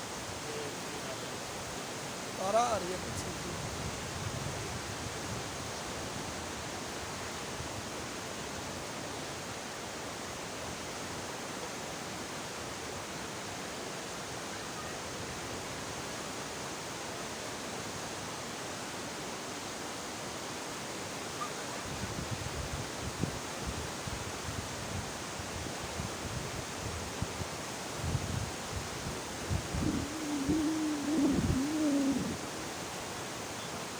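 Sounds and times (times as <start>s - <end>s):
wind buffeting microphone: 28.0s - 32.5s.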